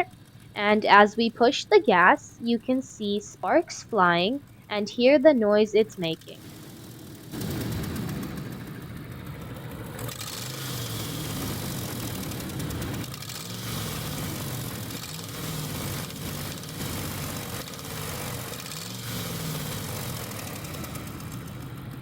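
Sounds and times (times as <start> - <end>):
engine revving with exhaust leak: 6.3 - 22.0.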